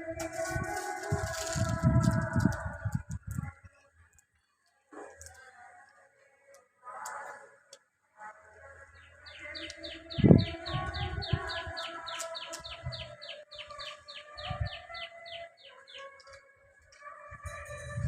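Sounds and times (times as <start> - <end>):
bird chirping: 8.9 - 16.4.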